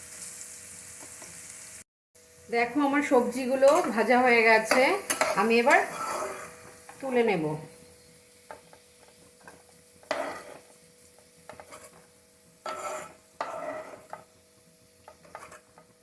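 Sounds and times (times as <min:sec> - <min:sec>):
faint oil sizzle: 0:00.0 - 0:16.0
metal spatula scraping a pan: 0:03.5 - 0:07.0, 0:08.5 - 0:16.0.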